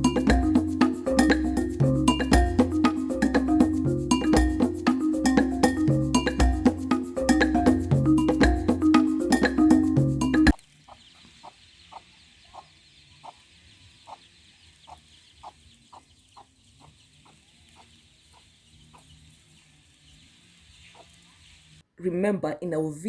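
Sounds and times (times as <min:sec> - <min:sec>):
music: 0:00.0 - 0:10.6
chicken clucking: 0:10.8 - 0:19.2.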